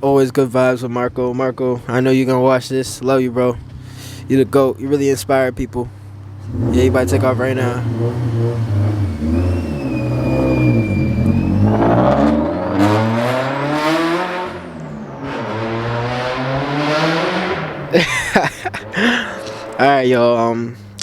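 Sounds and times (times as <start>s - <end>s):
car engine revving: 1.9s - 21.0s.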